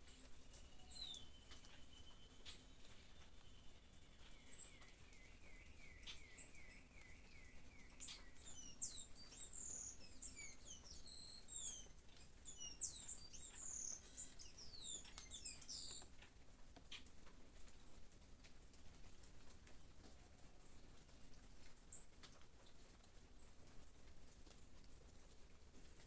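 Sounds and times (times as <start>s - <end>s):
birds twittering and chirping: 0.0s - 16.1s.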